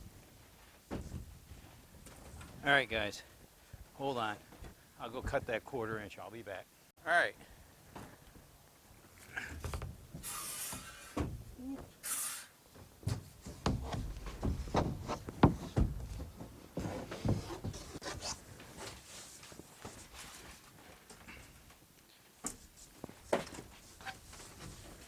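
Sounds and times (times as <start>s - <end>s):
hissing rustles: 9.6s - 11.2s
knocks and thumps: 10.8s - 12.0s, 12.7s - 18.0s
rubbing: 13.1s - 20.6s.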